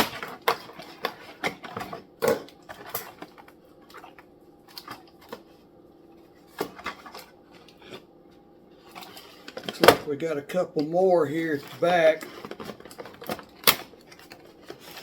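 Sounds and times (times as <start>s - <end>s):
plastic and cardboard packaging clicks: 12.2s - 15.0s.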